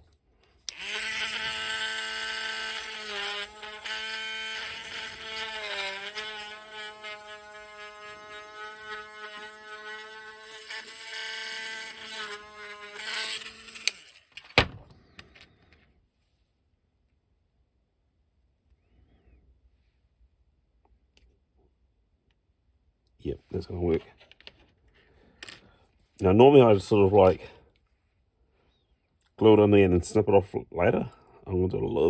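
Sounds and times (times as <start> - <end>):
small electric drill running: 0.6 - 14.5.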